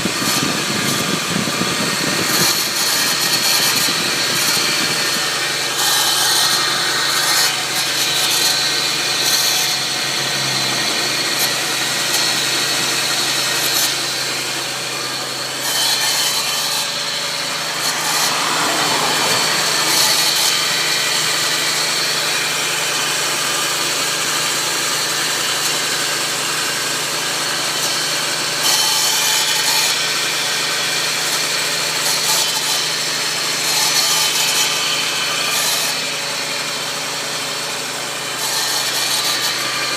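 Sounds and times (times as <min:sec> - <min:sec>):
car engine running: 0:00.0 - 0:15.6, 0:16.4 - 0:22.9
rough rasping grinding noise: 0:00.0 - 0:39.9.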